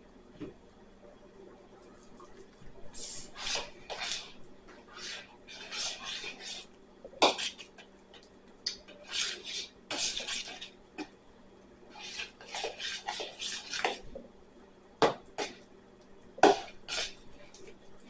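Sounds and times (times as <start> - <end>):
utensil scraping slime in bowl: 3.0 - 7.8, 8.7 - 11.1, 11.9 - 14.1, 16.4 - 17.2.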